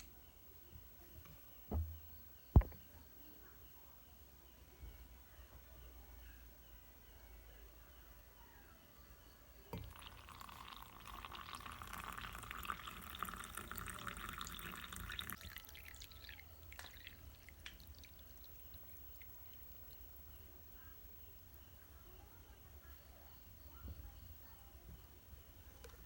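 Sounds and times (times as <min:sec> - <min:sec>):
water running into vessel: 0:09.7 - 0:20.1.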